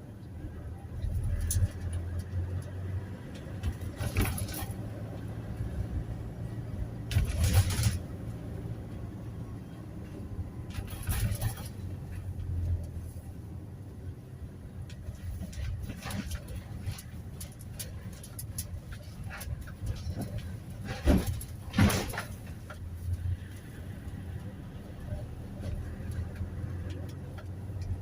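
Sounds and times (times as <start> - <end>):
van engine and road hum: 0.0 - 28.0.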